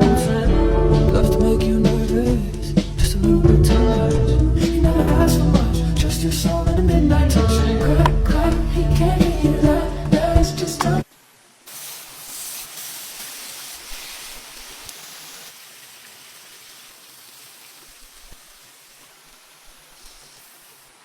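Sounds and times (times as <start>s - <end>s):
rushing hiss: 11.0s - 21.0s.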